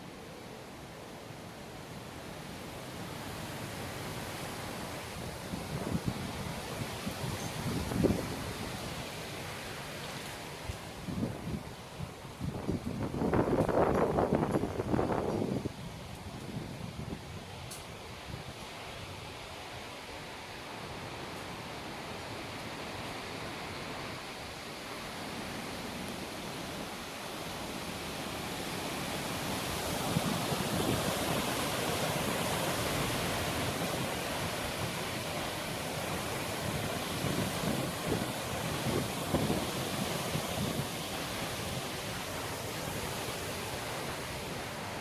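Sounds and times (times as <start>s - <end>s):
wind rushing through leaves: 0.0s - 45.0s
wind bumps on microphone: 5.6s - 9.0s, 12.4s - 17.5s, 36.6s - 42.2s.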